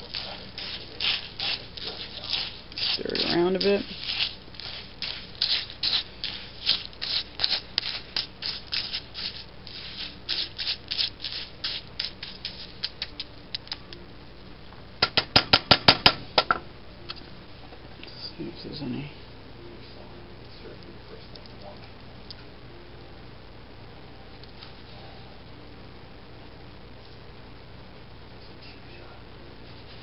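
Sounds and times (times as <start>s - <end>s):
spoon scraping birdseed in a mold: 0.0s - 13.7s.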